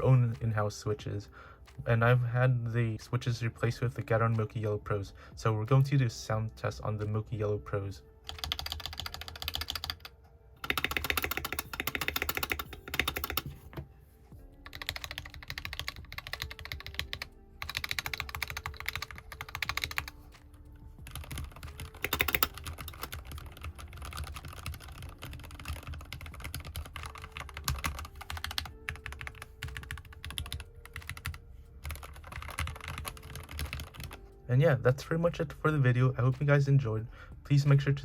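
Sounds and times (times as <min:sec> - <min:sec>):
quiet background music: 0:00.0 - 0:38.0
mechanical keyboard key clacks: 0:21.1 - 0:34.2.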